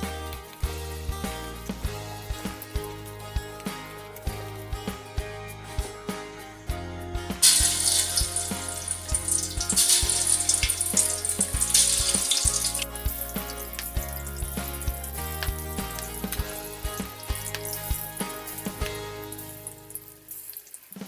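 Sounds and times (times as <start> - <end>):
background music with beat: 0.0 - 21.0.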